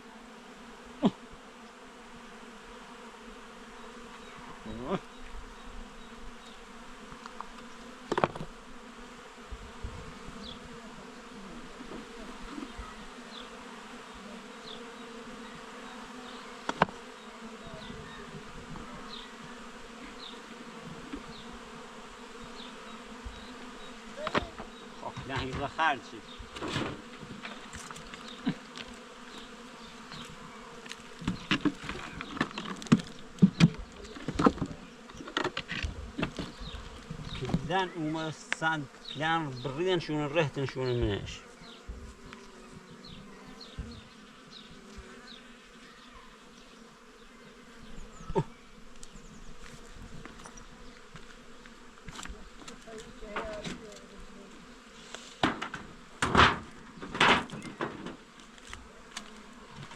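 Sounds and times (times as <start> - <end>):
insects buzzing: 0.0 - 59.9
sharp knocks: 55.4 - 58.2.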